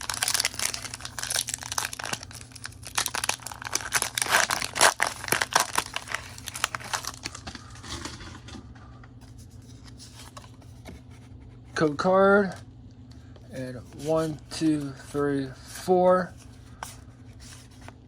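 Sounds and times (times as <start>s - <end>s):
foil wrapper crinkling and tearing: 0.0s - 8.3s.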